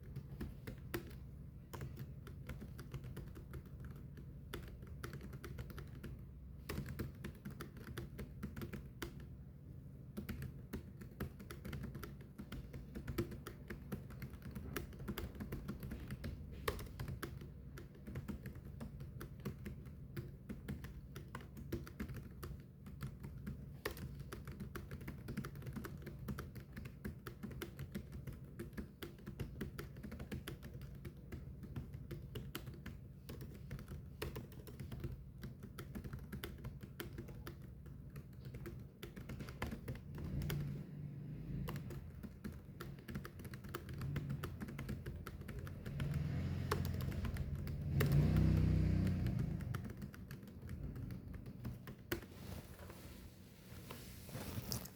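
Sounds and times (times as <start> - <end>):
fast keyboard typing: 0.0 - 52.3.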